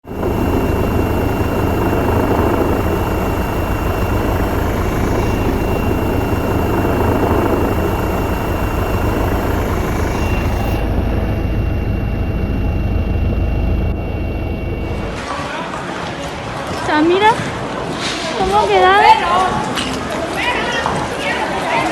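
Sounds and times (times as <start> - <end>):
helicopter rotor throbbing: 0.0 - 15.2
helicopter engine whine: 0.0 - 15.3.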